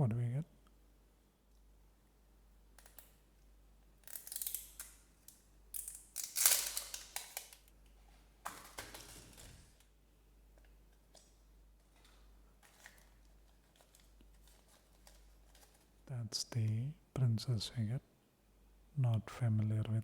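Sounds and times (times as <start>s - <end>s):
packaging crinkling and tearing: 4.0s - 7.7s, 8.5s - 9.9s, 11.1s - 16.0s.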